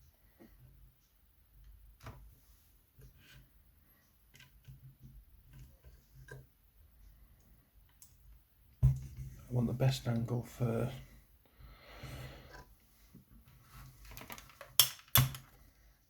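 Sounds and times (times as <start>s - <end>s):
lock and tools clicking: 14.2s - 15.5s.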